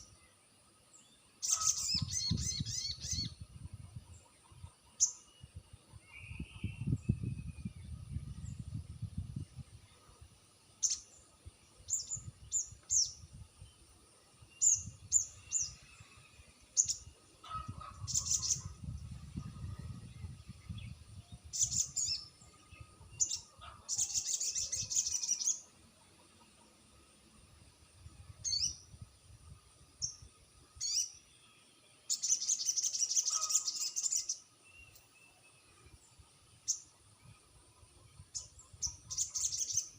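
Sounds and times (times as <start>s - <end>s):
bird chirping and trilling: 1.4s - 3.4s, 16.8s - 25.7s, 28.4s - 28.9s, 30.0s - 31.4s, 32.1s - 35.5s, 38.3s - 39.9s.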